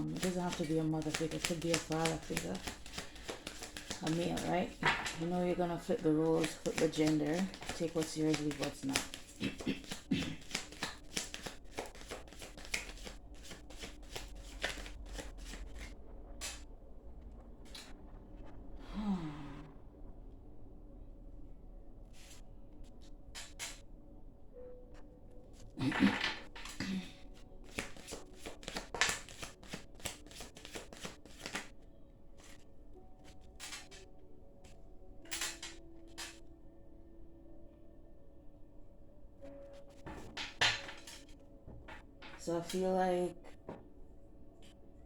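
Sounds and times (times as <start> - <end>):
cards being shuffled: 0.0 - 16.6, 25.8 - 31.8, 33.2 - 34.0, 34.6 - 36.4, 40.0 - 41.4.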